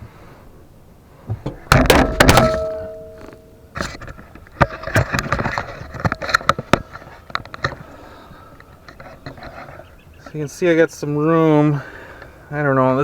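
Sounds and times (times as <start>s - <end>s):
heavy metal clanks: 1.3s - 6.7s
metal parts knocking and rattling: 1.3s - 7.6s
ringing tone: 2.1s - 3.8s.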